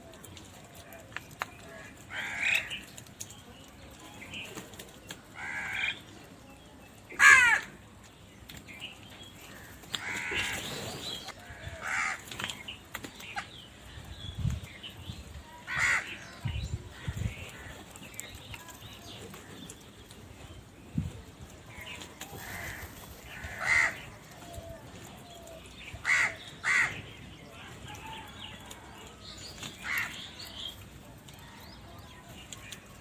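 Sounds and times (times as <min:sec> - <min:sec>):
crows cawing: 0:01.8 - 0:02.9, 0:05.4 - 0:06.0, 0:07.2 - 0:07.7, 0:10.0 - 0:10.6, 0:11.4 - 0:12.3, 0:15.7 - 0:16.3, 0:22.4 - 0:24.2, 0:26.0 - 0:27.1, 0:29.8 - 0:30.4.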